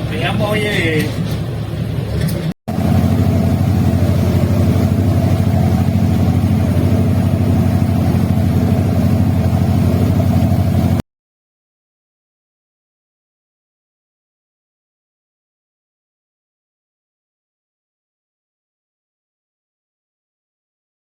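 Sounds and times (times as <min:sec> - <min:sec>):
boat engine running: 0:00.0 - 0:11.0.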